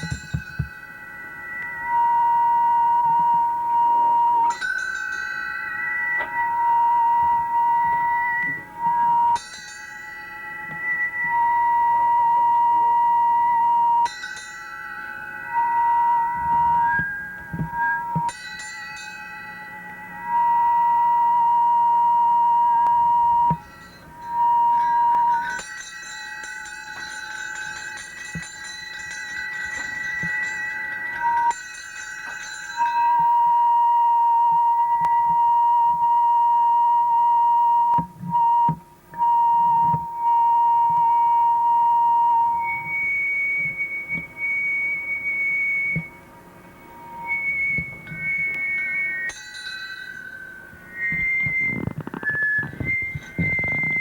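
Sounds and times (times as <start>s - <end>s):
high-pitched audio feedback: 0.0s - 54.0s.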